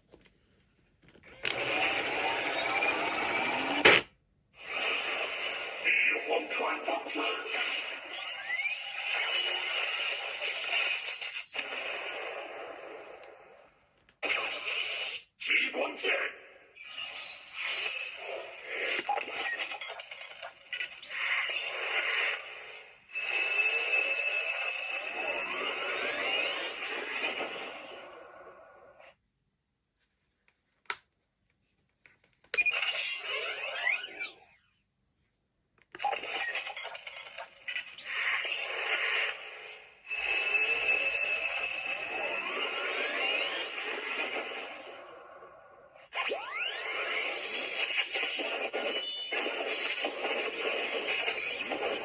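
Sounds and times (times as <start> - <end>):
choppy voice-like electronic blasts: 4.7 - 8.2, 46.1 - 52.0
crackly electronic effects: 4.7 - 13.6, 16.8 - 29.2, 36.0 - 52.0
high electronic tone with rising sweeps: 23.1 - 28.5, 40.0 - 45.2, 46.1 - 52.0
steady high electronic tone: 40.0 - 44.4.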